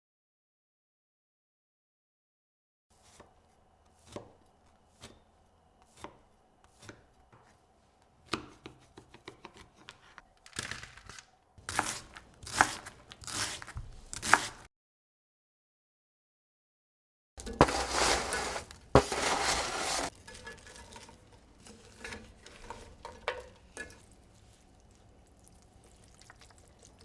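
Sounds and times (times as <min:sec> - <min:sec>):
knife chopping on cutting board: 0:04.0 - 0:04.4, 0:05.9 - 0:07.1, 0:11.7 - 0:14.7, 0:17.6 - 0:20.1.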